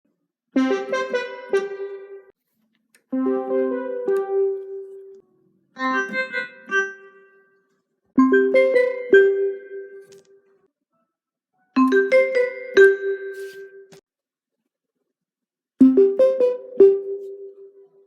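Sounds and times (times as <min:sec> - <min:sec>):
notification melody: 0:08.2 - 0:09.9, 0:11.8 - 0:13.8, 0:15.8 - 0:17.6.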